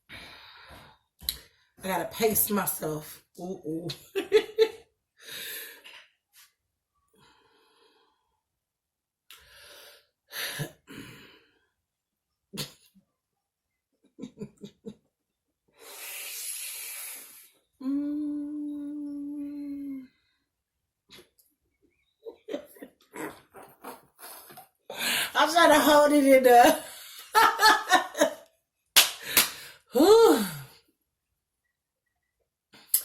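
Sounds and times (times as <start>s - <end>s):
woman breathing heavily: 0.0s - 1.1s, 24.2s - 25.4s
throat and mouth noises: 23.0s - 24.8s.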